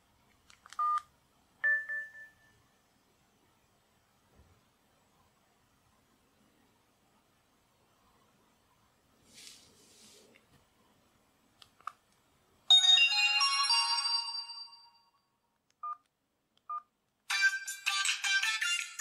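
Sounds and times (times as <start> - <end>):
faint rustle: 9.2 - 10.6
phone ringtone: 12.7 - 15.1
bright chiming phone jingle: 12.7 - 15.2.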